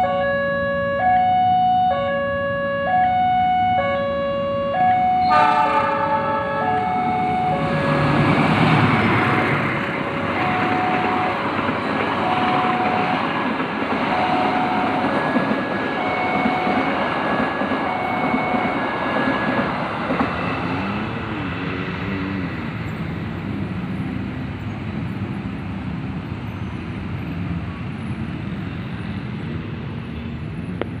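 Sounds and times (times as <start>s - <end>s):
crossing warning alarm tones: 0.0s - 21.7s
train rumbling: 4.9s - 31.0s.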